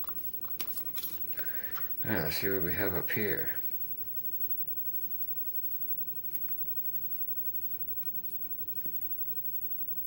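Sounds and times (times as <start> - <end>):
small metal parts scraping: 0.4 - 1.3.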